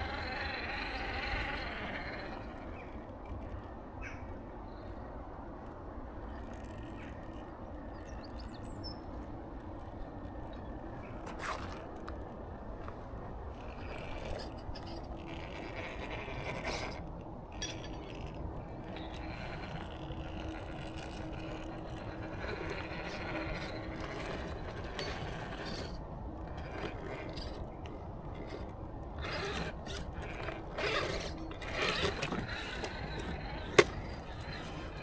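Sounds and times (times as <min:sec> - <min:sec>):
electric motor and gears whining: 0:00.0 - 0:04.0, 0:04.6 - 0:35.0
drivetrain ratcheting and scraping: 0:13.6 - 0:35.0.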